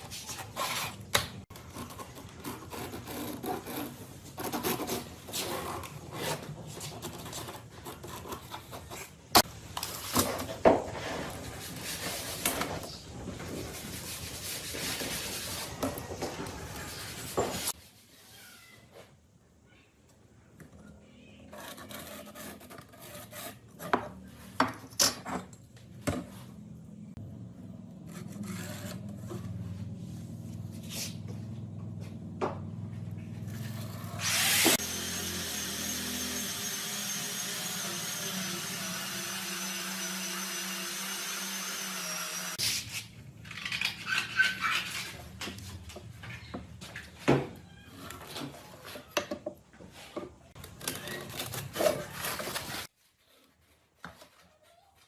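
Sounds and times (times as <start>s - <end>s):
power tool whining: 33.5s - 42.6s.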